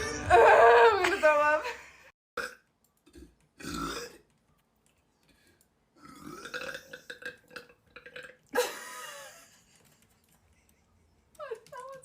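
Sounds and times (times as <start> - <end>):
woman burping: 3.6 - 4.2, 6.0 - 8.7.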